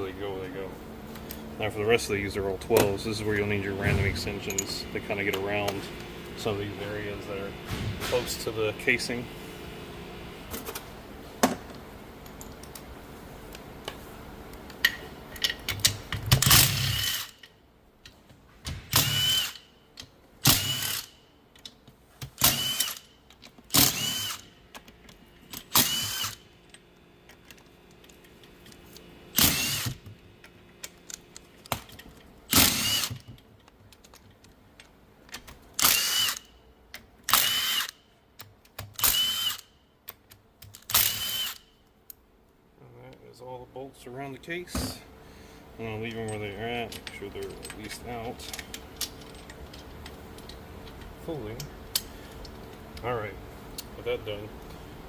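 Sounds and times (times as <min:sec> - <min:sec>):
power tool whining: 0:23.7 - 0:24.5, 0:25.6 - 0:26.4, 0:29.3 - 0:30.0, 0:32.5 - 0:33.3, 0:40.9 - 0:41.6.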